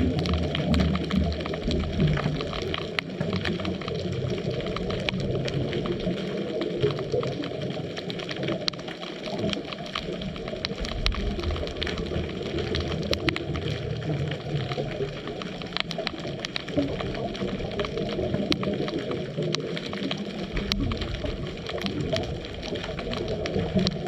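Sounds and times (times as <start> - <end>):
muffled underwater rumble: 0.0 - 24.0
sharp underwater clicks: 0.0 - 24.0.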